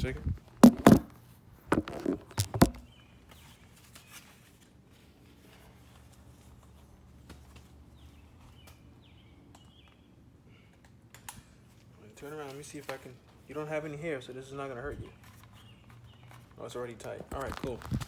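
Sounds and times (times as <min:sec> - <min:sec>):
sharp knocks and thumps: 0:00.6 - 0:01.1, 0:01.7 - 0:02.9.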